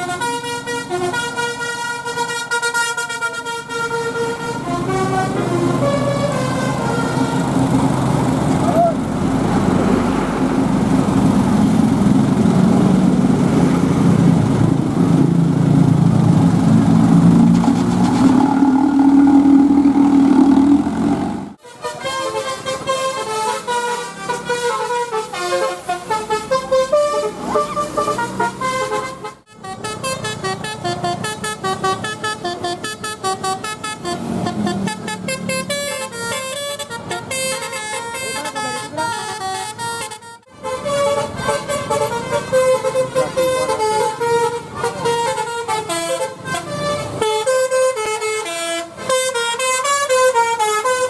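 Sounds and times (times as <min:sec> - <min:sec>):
multi-tone air horn tune: 0:00.0 - 0:07.4, 0:17.6 - 0:51.0
bus diesel engine droning: 0:00.0 - 0:51.0.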